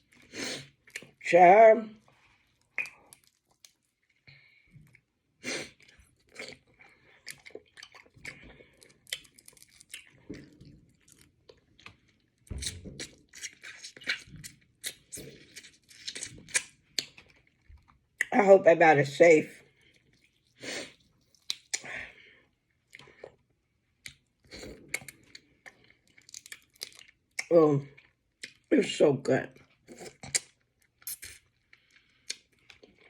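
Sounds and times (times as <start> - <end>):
crunchy chewing: 2.5 - 4.2, 5.6 - 18.0, 19.8 - 21.9
wet mouth clicks: 2.8 - 3.8, 21.4 - 21.9, 29.9 - 31.4.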